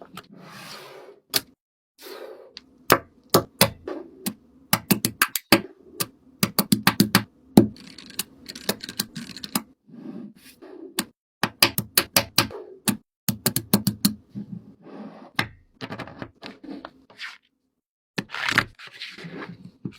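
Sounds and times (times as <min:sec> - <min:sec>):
sharp clicks and taps: 0:02.9 - 0:09.7, 0:11.0 - 0:14.2.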